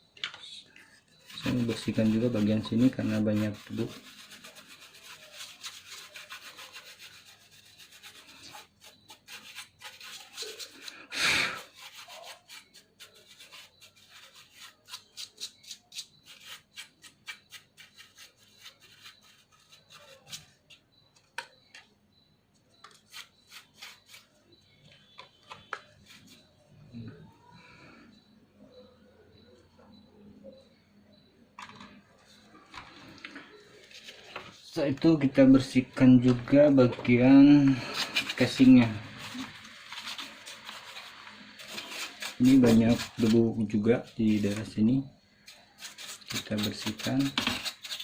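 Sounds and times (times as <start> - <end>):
brush scrubbing laptop: 1.2 - 20.6, 22.8 - 24.3, 36.6 - 44.9, 45.5 - 48.0.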